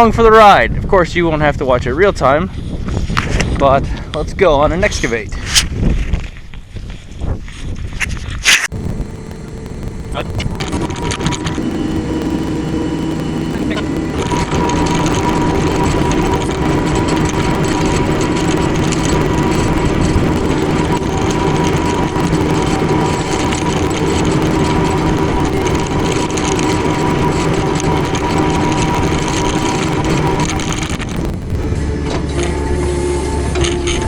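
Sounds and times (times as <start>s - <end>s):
excavator diesel engine running: 8.7s - 32.1s.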